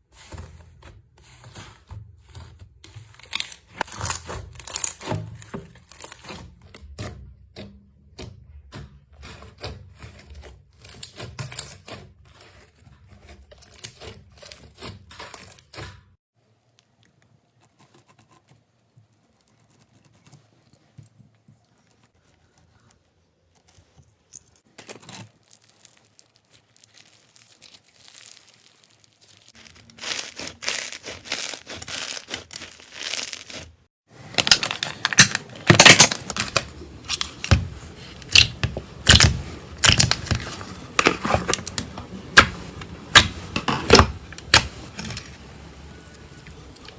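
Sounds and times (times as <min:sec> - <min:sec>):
slime crackling and popping: 0:03.2 - 0:06.2, 0:24.8 - 0:33.7, 0:34.4 - 0:45.4
hands squeezing slime: 0:24.9 - 0:33.8, 0:34.4 - 0:46.9.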